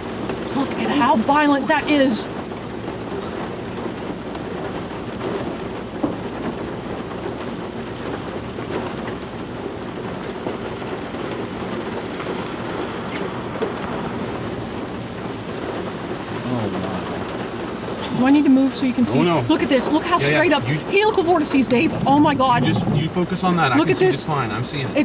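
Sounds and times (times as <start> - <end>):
rain: 0.0 - 25.0
thunder rumbling: 0.0 - 25.0
wind on microphone: 21.4 - 23.2.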